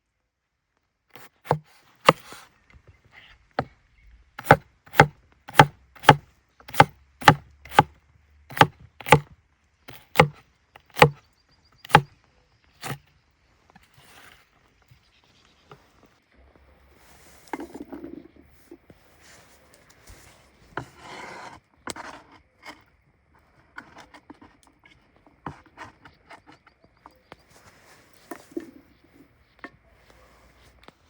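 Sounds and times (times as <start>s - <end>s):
wood rubbed and scraped by hand: 1.2s - 2.4s, 4.4s - 7.9s.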